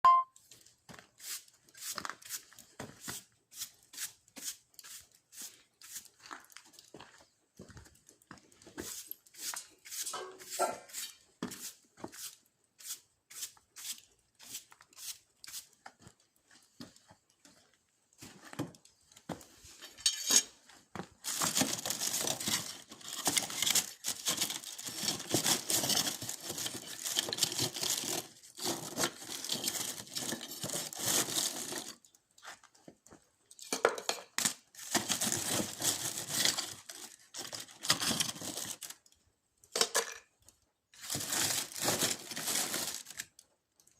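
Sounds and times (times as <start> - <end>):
paper crumpling and tearing: 21.2 - 32.0, 34.8 - 39.0, 41.0 - 43.3.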